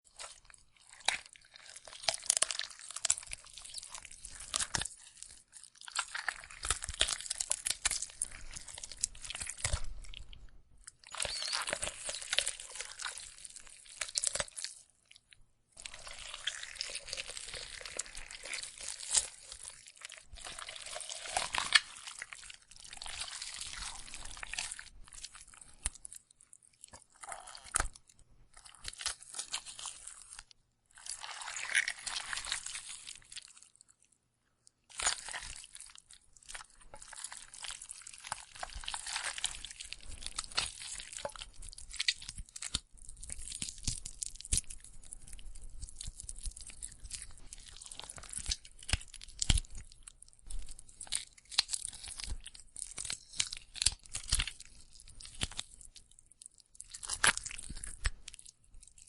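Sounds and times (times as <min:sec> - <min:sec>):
tearing flesh: 0:00.0 - 0:34.1, 0:34.8 - 0:59.0.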